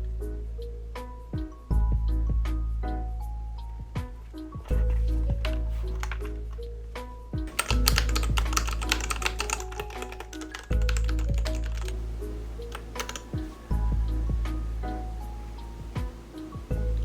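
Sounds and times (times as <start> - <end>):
background music: 0.0 - 17.0
mechanical keyboard keys clacking: 4.7 - 6.4, 7.5 - 12.0, 12.6 - 13.7.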